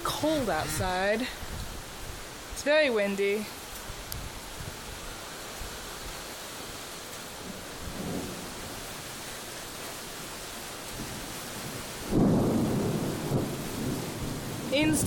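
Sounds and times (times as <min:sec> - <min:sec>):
steady rain: 0:00.0 - 0:15.0
thunder rumbling: 0:07.4 - 0:09.2, 0:11.0 - 0:15.0.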